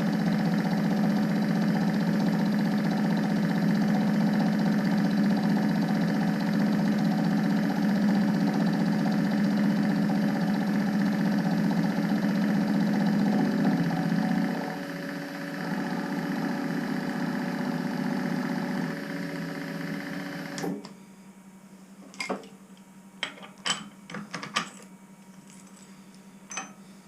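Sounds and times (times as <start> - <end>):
milling machine humming: 0.0 - 20.9
metal parts clicking and knocking: 23.2 - 25.8.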